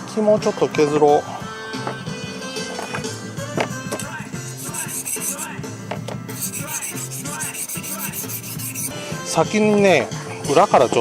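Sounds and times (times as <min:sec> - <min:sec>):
plucked-string background music: 0:01.8 - 0:11.0
knife scraping on whetstone: 0:04.4 - 0:05.6, 0:06.3 - 0:09.0.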